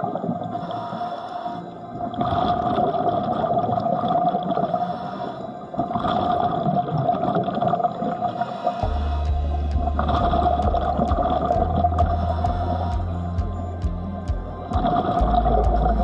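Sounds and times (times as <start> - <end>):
crackly underwater noise: 0.0 - 16.0
steady hum: 7.8 - 16.0.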